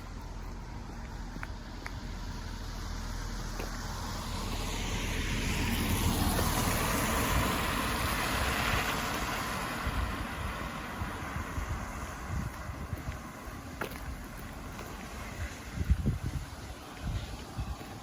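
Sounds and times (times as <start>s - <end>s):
vehicle passing by: 0.4s - 13.2s
wind buffeting microphone: 3.8s - 18.0s.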